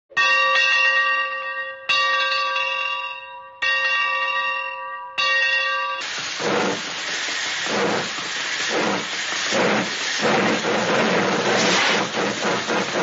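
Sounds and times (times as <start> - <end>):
loud rushing rumbling noise: 7.6 - 13.0.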